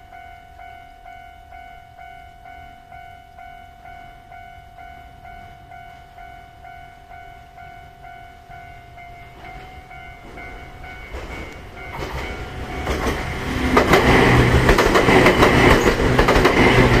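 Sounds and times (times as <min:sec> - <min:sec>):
electric train passing: 0:00.0 - 0:17.0
train wheels clattering over rail joints: 0:09.4 - 0:17.0.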